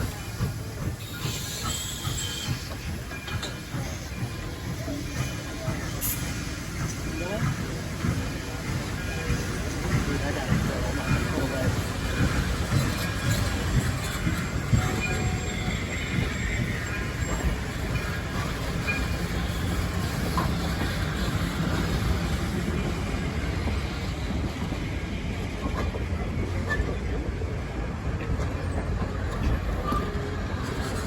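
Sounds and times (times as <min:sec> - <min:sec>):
train wheels rumbling on rail: 0:00.0 - 0:31.0
faint wheel squeals: 0:00.8 - 0:04.3.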